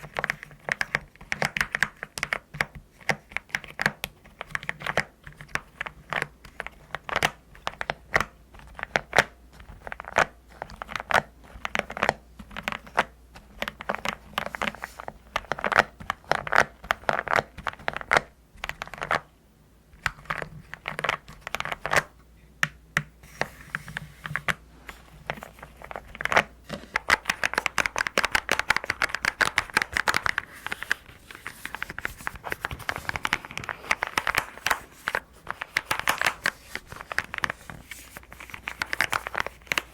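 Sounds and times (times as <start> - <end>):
mechanical keyboard typing: 0.0 - 14.7, 15.3 - 19.3, 25.3 - 31.0, 31.8 - 37.6.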